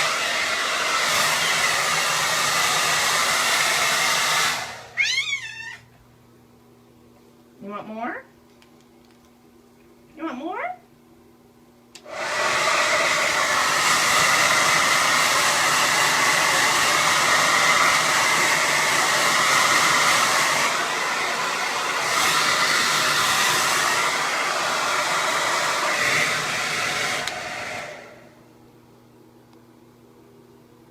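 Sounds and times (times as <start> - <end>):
blow dryer running: 0.0 - 5.2, 12.0 - 28.5
blow dryer switch: 11.9 - 28.2.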